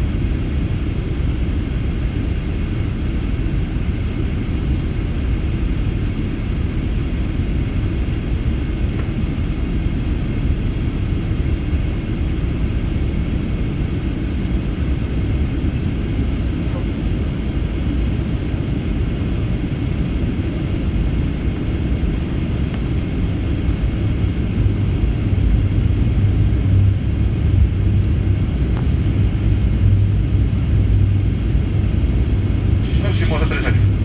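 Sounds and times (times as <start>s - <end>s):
airplane cabin engine rumble: 0.0s - 34.0s
deep hum: 23.5s - 34.0s.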